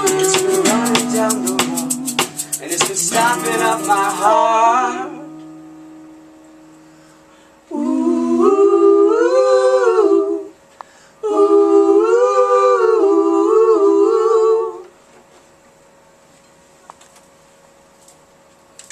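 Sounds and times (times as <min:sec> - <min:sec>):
band music: 0:00.0 - 0:04.6
a cappella humming in harmony: 0:00.0 - 0:05.4, 0:07.6 - 0:15.0.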